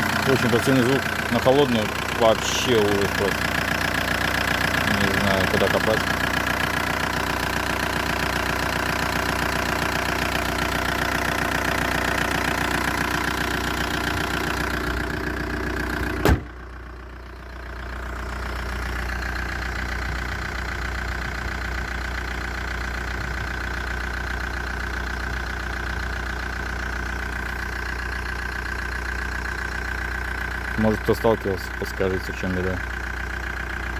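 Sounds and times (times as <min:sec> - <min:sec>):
diesel engine idling with knock: 0:00.0 - 0:33.9
sharp bang: 0:16.2 - 0:16.5.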